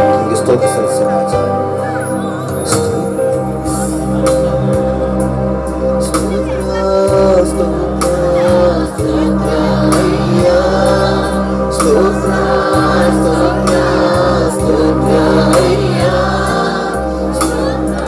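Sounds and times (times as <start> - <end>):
sustained keyboard chords: 0.0 - 18.0
congregation singing: 4.1 - 18.0.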